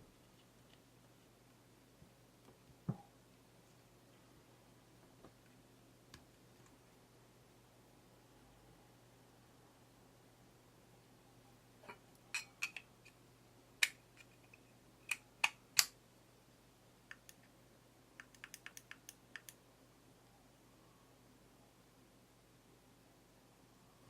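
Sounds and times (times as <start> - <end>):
sharp clicks and taps: 18.2 - 19.6.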